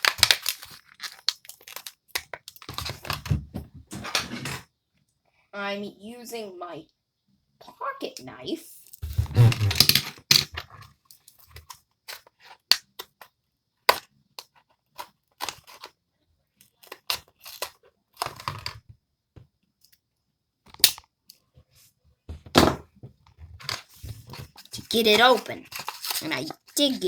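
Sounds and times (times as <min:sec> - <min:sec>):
knife cutting plastic packaging: 0:00.0 - 0:03.2, 0:24.5 - 0:27.0.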